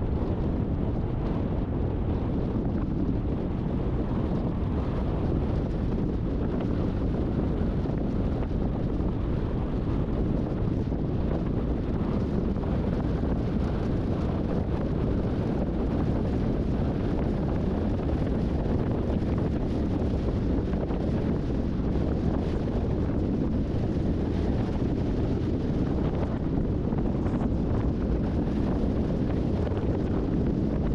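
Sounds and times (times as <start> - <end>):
wind buffeting microphone: 0.0 - 30.9.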